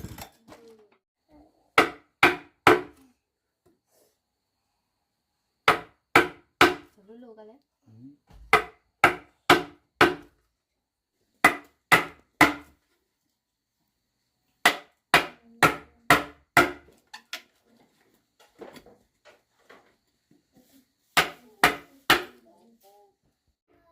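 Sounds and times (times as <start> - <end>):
tool striking wood: 1.8 - 3.0, 5.6 - 6.9, 8.3 - 10.3, 11.4 - 12.8, 14.6 - 17.0, 21.2 - 22.4.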